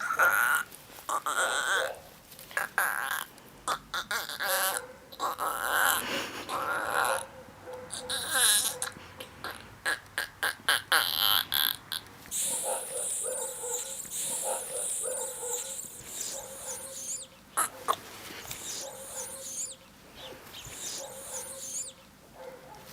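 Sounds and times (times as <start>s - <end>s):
dog whimpering and yelping: 12.3s - 17.8s, 18.6s - 21.9s.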